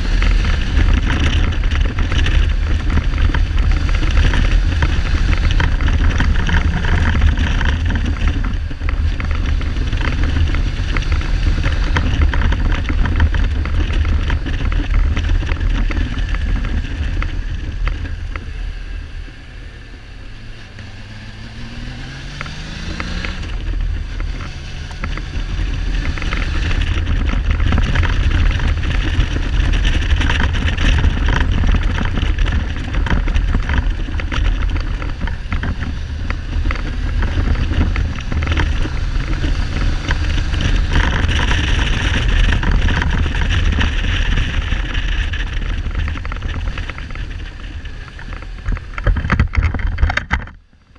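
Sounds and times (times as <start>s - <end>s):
wind buffeting microphone: 20.8s - 50.6s
motorcycle engine misfiring: 22.4s - 50.9s.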